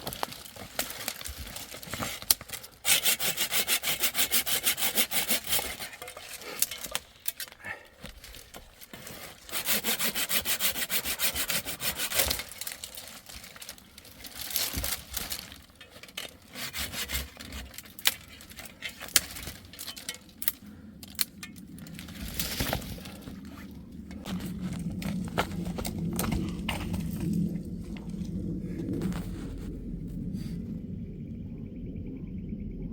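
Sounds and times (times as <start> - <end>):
hand saw cutting wood: 1.1 - 7.0, 9.0 - 13.6, 16.2 - 19.4.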